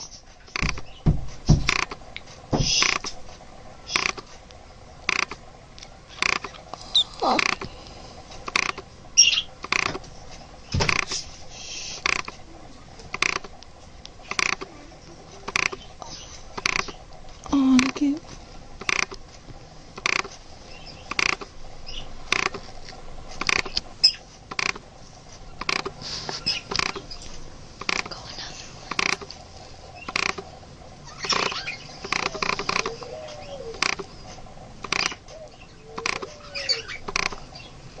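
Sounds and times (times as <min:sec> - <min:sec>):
budgerigar squeaking: 0:03.9 - 0:04.2, 0:08.6 - 0:09.9, 0:31.1 - 0:34.0, 0:36.0 - 0:37.7.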